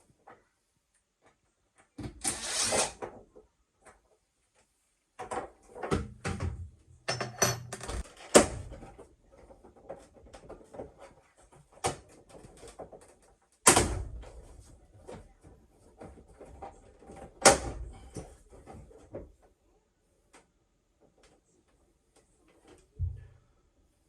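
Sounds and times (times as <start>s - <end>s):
parts knocking and rattling: 5.2s - 15.2s
parts clattering: 5.9s - 8.9s.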